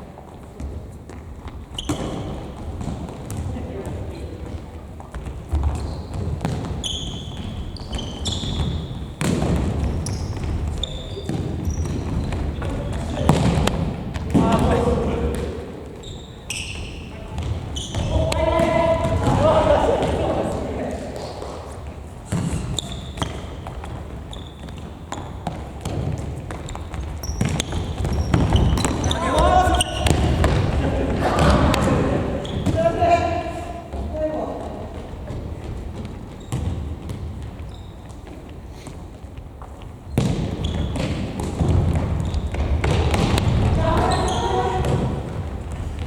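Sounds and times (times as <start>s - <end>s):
shoes squeaking on gym floor: 0.2s - 3.5s, 4.6s - 13.8s, 15.9s - 34.1s, 34.7s - 46.0s
ball kicked and bouncing: 5.0s - 14.7s, 22.3s - 30.8s, 35.3s - 38.5s, 39.6s - 46.0s.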